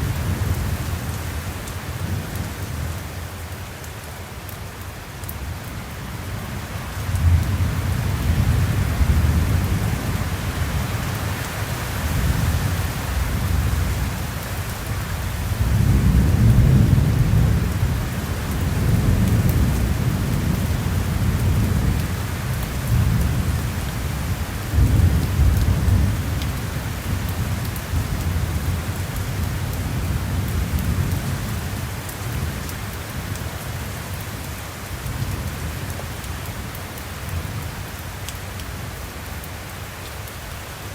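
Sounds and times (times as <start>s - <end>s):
heavy rain: 0.0s - 40.9s
rolling thunder: 15.5s - 22.0s.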